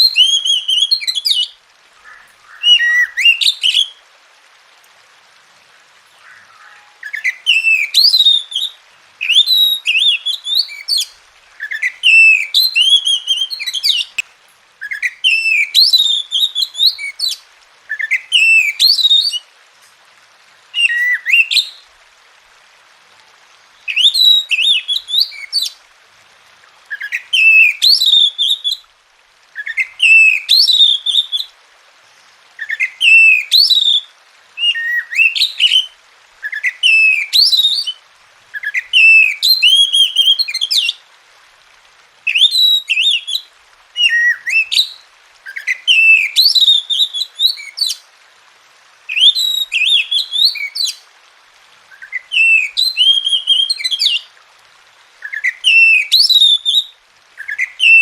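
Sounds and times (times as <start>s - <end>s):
bird singing whistled phrases: 0.0s - 4.0s, 6.1s - 14.2s, 14.8s - 19.4s, 20.8s - 21.8s, 23.9s - 25.8s, 26.9s - 28.8s, 29.6s - 31.5s, 32.6s - 41.0s, 42.3s - 48.0s, 49.1s - 51.0s, 51.9s - 54.3s, 55.2s - 58.0s.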